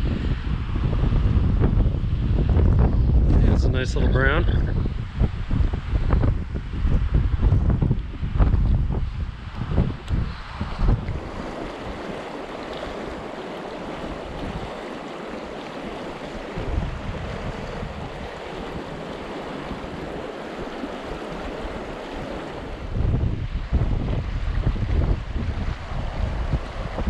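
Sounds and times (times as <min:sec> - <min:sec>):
wind buffeting microphone: 0:00.0 - 0:27.0
river water rushing: 0:10.4 - 0:27.0.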